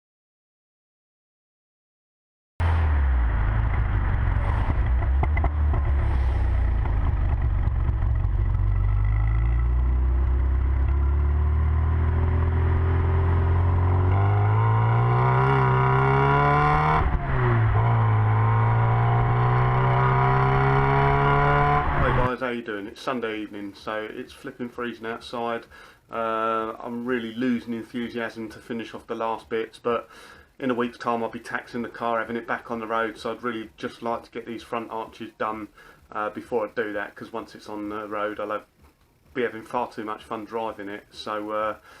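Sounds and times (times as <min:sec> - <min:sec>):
car engine accelerating: 0:02.6 - 0:22.3.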